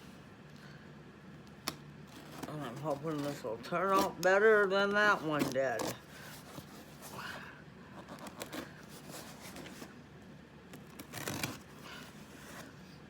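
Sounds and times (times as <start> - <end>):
cardboard package rustling: 7.9 - 10.0, 10.7 - 12.8.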